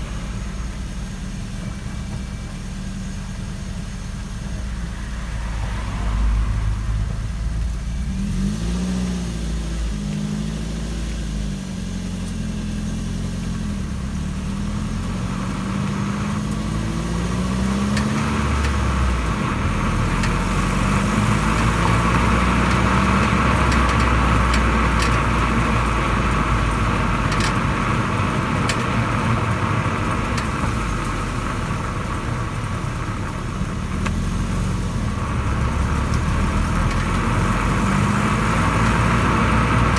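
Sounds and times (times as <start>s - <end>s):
car engine and road noise: 0.0s - 39.9s
sharp suspension clicks: 17.5s - 31.2s.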